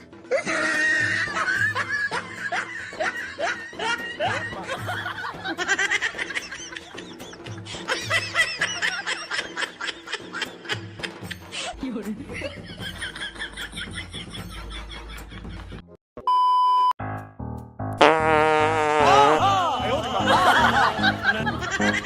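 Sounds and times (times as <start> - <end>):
snickering laughter: 0.3 - 11.7, 19.1 - 22.0.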